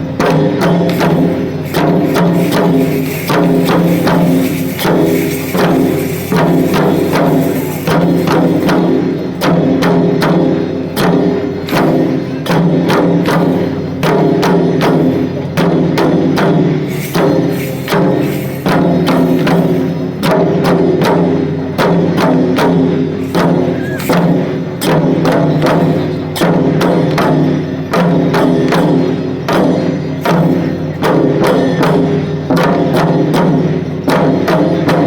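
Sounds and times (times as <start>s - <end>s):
drums in driving rhythm: 0.0s - 35.0s
continuous ringing: 0.7s - 9.4s, 16.5s - 20.6s.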